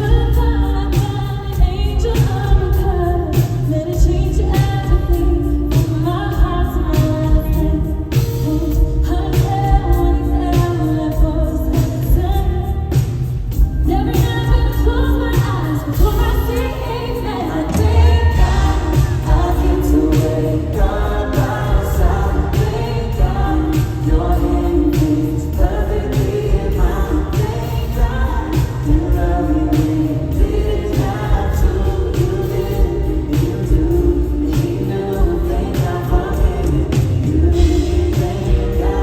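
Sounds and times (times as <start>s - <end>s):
heavy bass line: 17.7s - 39.0s
drum beat: 17.8s - 39.0s.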